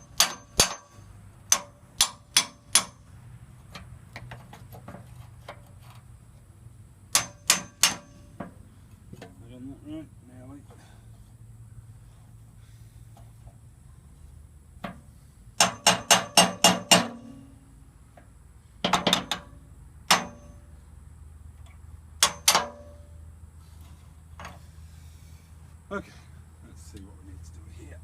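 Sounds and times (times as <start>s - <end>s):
hammer tapping on metal: 0.1s - 0.9s, 1.5s - 3.0s, 7.1s - 8.5s, 15.6s - 17.3s.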